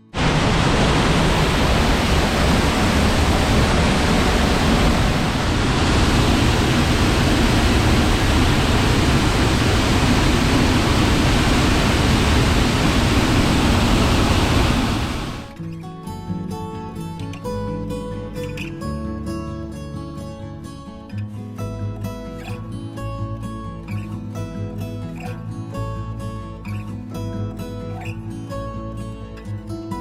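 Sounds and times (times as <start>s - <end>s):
waterfall roaring: 0.1s - 15.5s.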